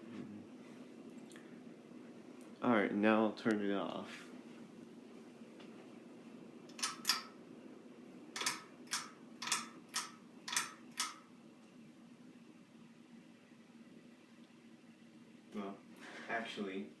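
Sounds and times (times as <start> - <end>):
faint fan hum: 0.0 - 17.0
pull-chain switch clicking: 6.7 - 7.4, 8.4 - 11.2.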